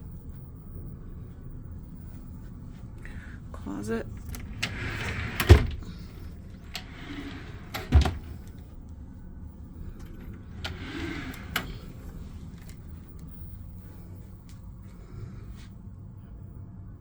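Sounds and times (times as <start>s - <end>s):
closet door sliding: 4.0s - 8.8s, 9.6s - 13.8s.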